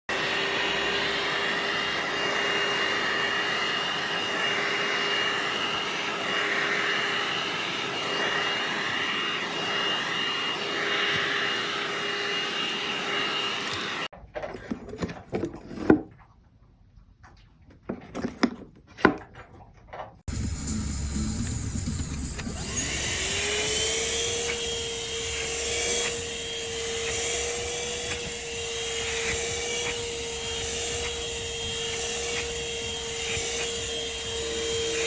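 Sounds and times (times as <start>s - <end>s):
car vacuum cleaner whine: 0.1s - 14.1s, 20.3s - 35.0s.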